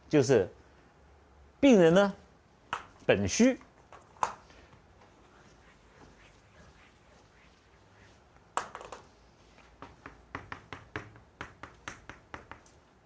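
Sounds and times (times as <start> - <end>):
chalk tapping on blackboard: 5.3 - 9.0, 9.6 - 12.8.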